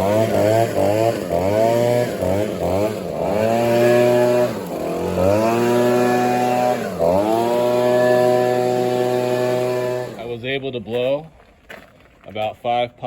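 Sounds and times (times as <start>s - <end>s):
leaf blower engine running: 0.0s - 10.6s.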